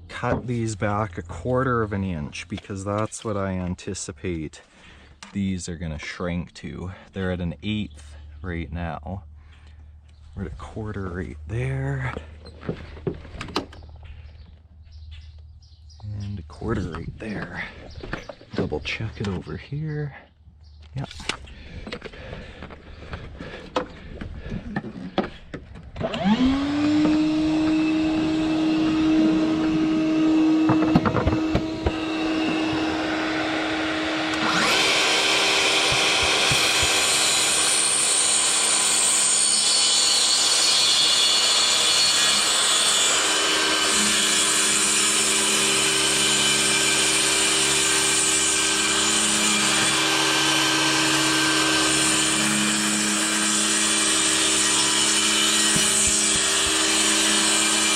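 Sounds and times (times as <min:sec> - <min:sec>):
saw blade cutting boards: 0:26.0 - 0:57.9
track saw motor running: 0:26.0 - 0:57.9.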